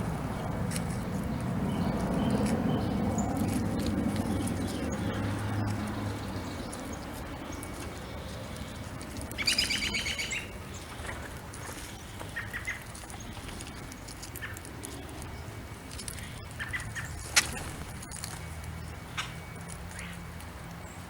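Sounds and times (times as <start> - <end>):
songbird chattering call: 9.4 - 10.6.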